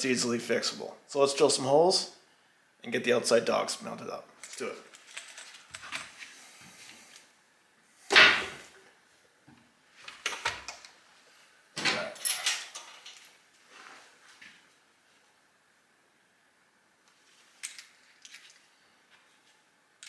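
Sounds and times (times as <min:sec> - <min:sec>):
tools clattering on workbench: 0:11.8 - 0:13.3.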